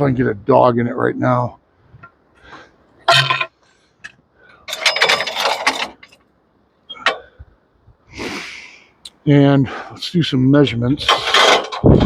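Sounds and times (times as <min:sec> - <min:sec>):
metal rattling clatter: 0:04.7 - 0:06.3, 0:11.0 - 0:12.0.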